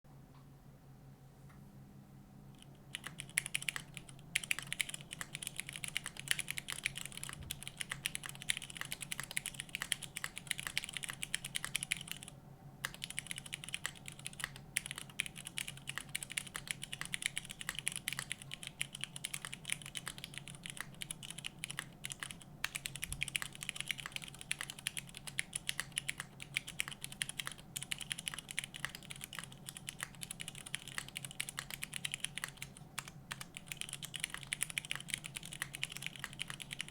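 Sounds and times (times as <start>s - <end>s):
fast mechanical keyboard typing: 2.6s - 36.9s.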